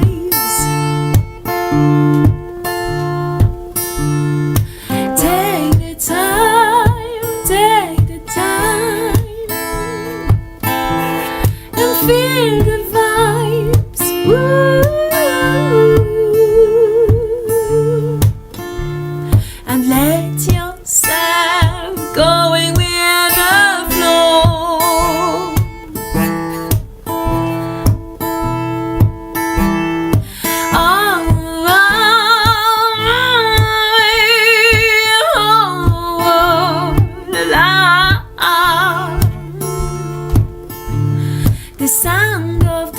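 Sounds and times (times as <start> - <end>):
person singing with vibrato: 0.0 - 1.1, 4.9 - 10.3, 11.0 - 18.2, 19.6 - 26.0, 30.3 - 40.3, 41.0 - 42.9
strummed acoustic guitar: 0.0 - 42.9
person singing long notes: 11.8 - 18.2, 30.7 - 40.0.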